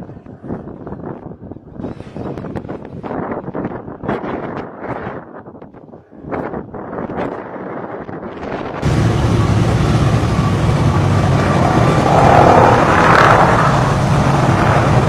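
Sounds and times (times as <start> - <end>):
rush of noise: 7.8 - 15.0
engine running with low hum: 8.8 - 15.0.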